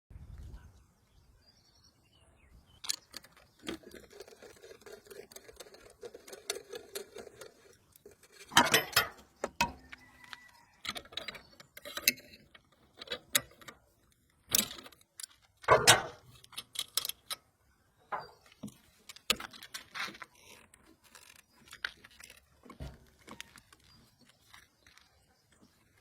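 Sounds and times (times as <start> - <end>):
metallic clicks and clinks: 2.8 - 17.5.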